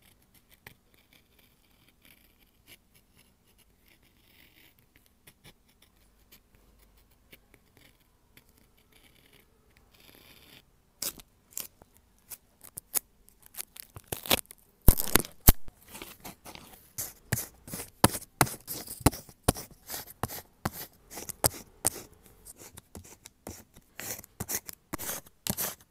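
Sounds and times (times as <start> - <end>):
faint scratching: 0.1 - 12.4
scissors snipping paper: 20.7 - 25.8.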